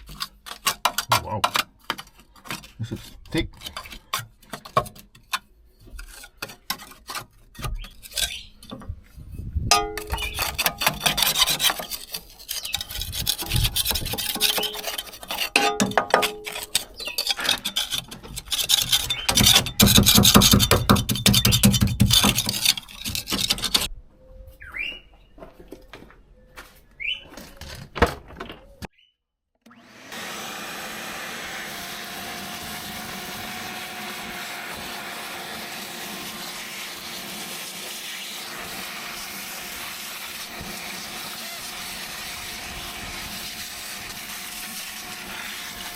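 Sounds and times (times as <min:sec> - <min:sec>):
dirt scraped off metal floor: 0:00.0 - 0:23.9.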